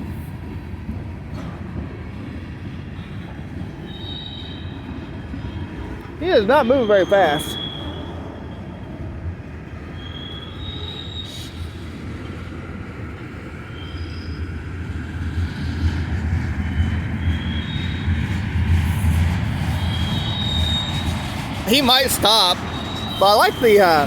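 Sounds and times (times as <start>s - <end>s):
train cars rumbling: 0.4s - 24.0s
faint wheel squeals: 3.8s - 5.7s, 6.5s - 8.9s, 9.8s - 12.0s, 13.6s - 14.7s, 17.2s - 18.4s, 19.6s - 24.0s.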